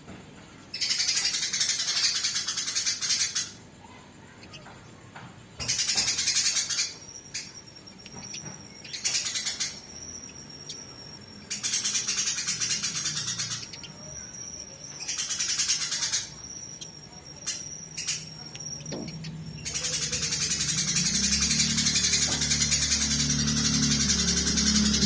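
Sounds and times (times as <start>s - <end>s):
sparrows harsh chattering: 0.7s - 25.0s
thin steady high tone: 0.7s - 25.0s
single bird chirps: 5.6s - 25.0s.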